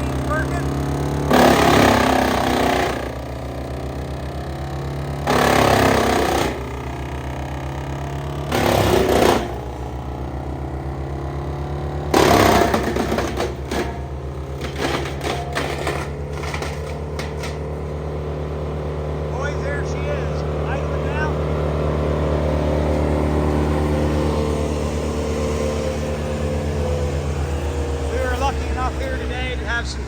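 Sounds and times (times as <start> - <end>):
short cracks of wood: 0.0 - 18.8
diesel engine running: 0.0 - 30.0
wood chipper chipping bursts: 0.0 - 30.0.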